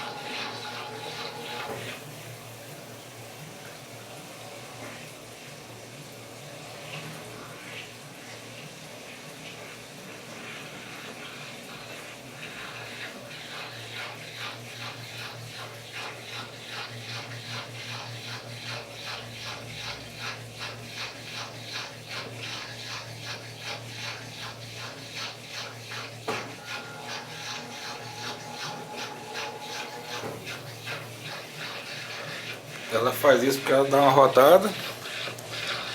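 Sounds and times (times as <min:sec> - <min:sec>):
steady whine: 0:00.0 - 0:02.7, 0:26.3 - 0:33.7
washing machine drum swishing: 0:00.0 - 0:03.6, 0:10.4 - 0:35.9.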